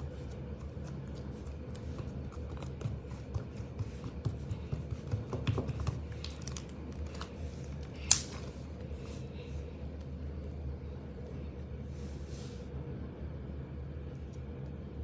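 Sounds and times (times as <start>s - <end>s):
slime clicking and crackling: 5.4s - 8.4s
sharp slime pop: 8.0s - 8.4s.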